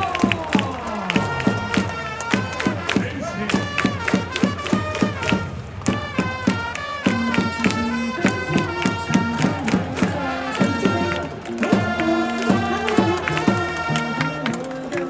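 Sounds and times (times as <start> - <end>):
upbeat music with bright melody: 6.0 - 15.0.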